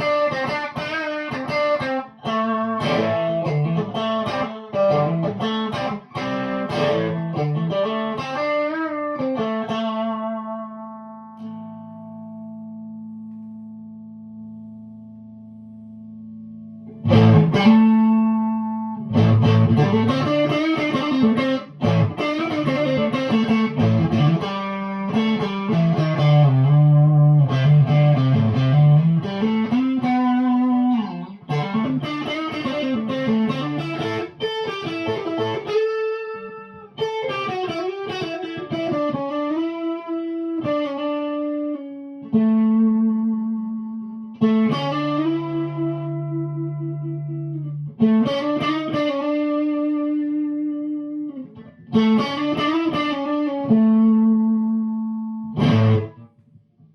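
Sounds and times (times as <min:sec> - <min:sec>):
electric guitar chords and notes: 0:00.0 - 0:56.9.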